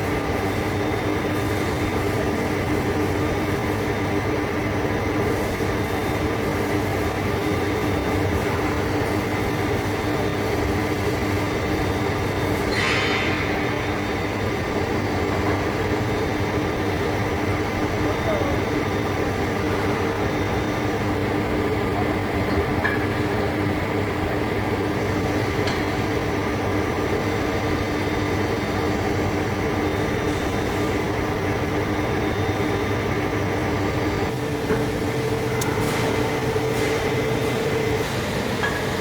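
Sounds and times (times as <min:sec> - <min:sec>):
lathe humming: 0:28.8 - 0:39.0.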